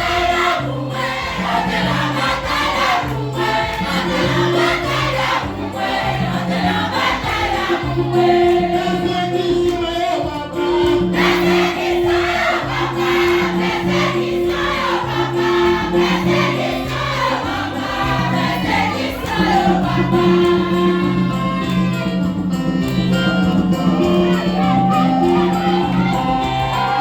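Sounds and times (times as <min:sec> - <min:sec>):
church choir singing: 0:00.0 - 0:21.5, 0:23.8 - 0:27.0
instrumental accompaniment: 0:00.0 - 0:27.0.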